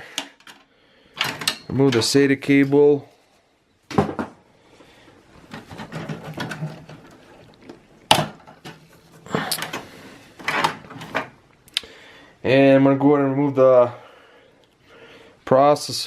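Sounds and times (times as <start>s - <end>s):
plastic connectors and cables rattling: 5.4s - 11.4s.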